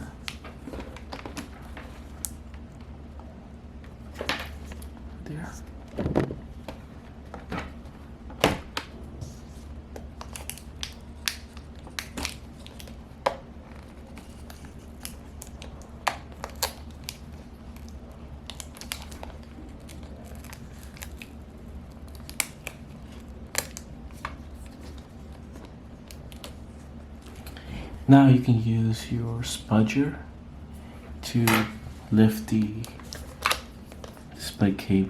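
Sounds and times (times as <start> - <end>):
steady low hum: 0.0 - 35.0
adhesive tape peeling and crinkling: 10.2 - 13.0, 13.7 - 27.5.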